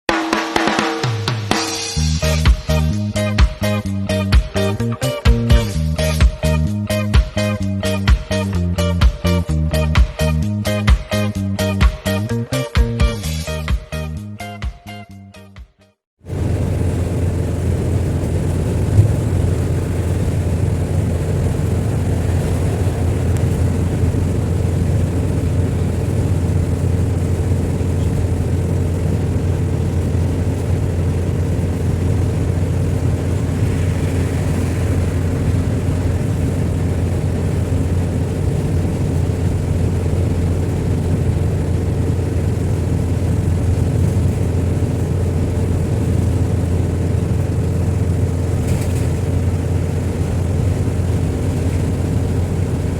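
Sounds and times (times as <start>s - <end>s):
vehicle engine and road noise: 16.2s - 52.9s.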